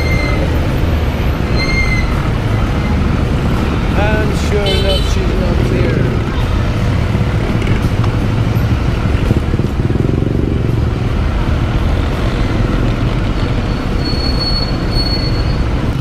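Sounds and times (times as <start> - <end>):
motorbike engine running: 2.0 - 14.1
thin high squeal: 14.0 - 15.7.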